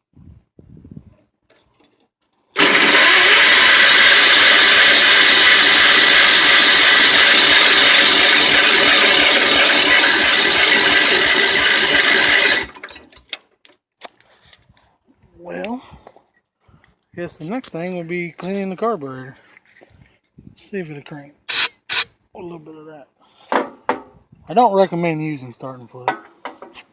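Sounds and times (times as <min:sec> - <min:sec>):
engine cranked by starter: 0:02.5 - 0:13.3.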